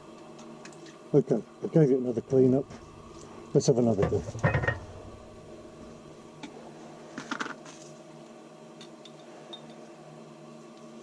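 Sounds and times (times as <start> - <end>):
steady low hum: 0.0 - 7.2.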